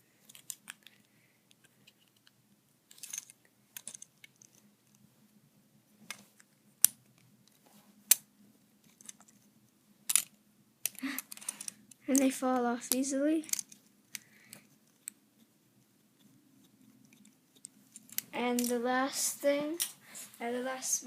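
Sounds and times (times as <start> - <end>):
plastic pieces clicking: 0.3 - 2.3, 2.9 - 4.6, 10.1 - 12.3, 12.9 - 15.2.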